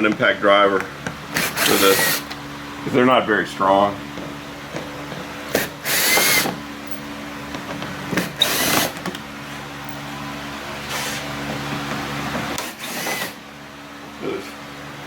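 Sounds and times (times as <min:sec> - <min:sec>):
drill whirring: 0:01.3 - 0:02.4, 0:05.5 - 0:07.0, 0:08.2 - 0:09.2, 0:10.8 - 0:11.3, 0:12.6 - 0:13.4.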